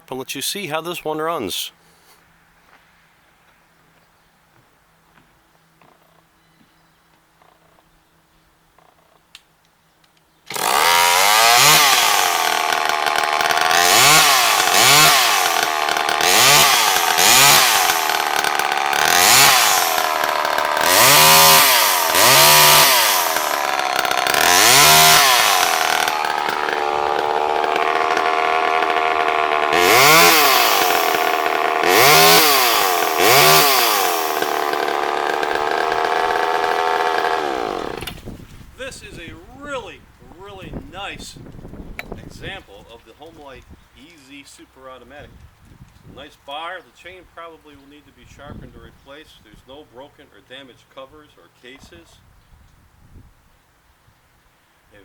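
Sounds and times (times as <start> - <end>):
chainsaw idling: 10.5 - 38.2
chainsaw starting and revving: 10.5 - 38.3.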